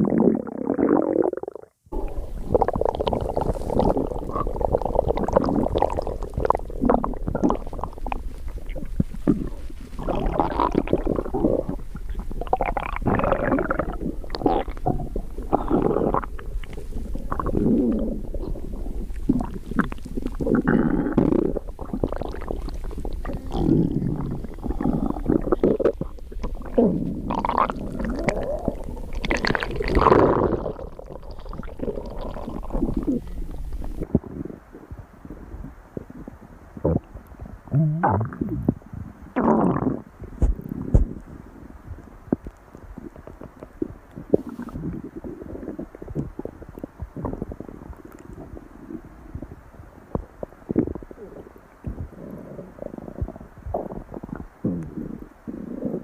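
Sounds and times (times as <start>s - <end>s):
stomach growling and gurgling: 0.0s - 56.0s
steady low hum: 1.8s - 56.0s.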